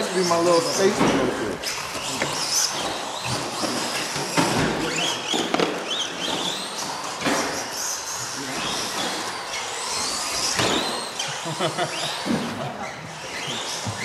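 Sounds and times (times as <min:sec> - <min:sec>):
toy truck electric motor whining: 0:00.0 - 0:14.0.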